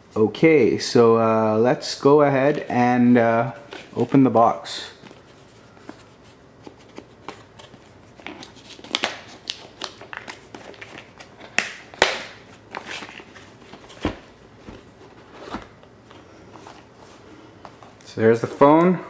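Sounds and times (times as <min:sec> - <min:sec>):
cardboard and plastic rustling: 0:04.9 - 0:11.6, 0:12.5 - 0:18.9.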